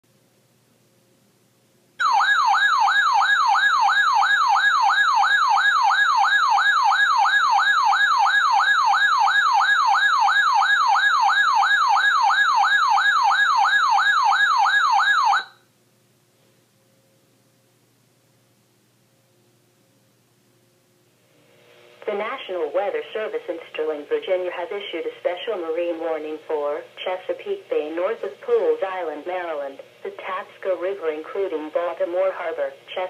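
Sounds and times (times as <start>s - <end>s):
warbling siren alarm: 2.0s - 15.6s.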